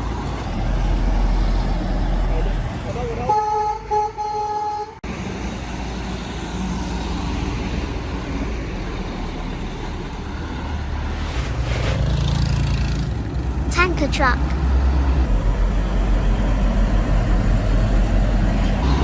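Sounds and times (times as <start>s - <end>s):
road traffic noise: 0.0s - 19.0s
vehicle horn: 3.2s - 5.0s.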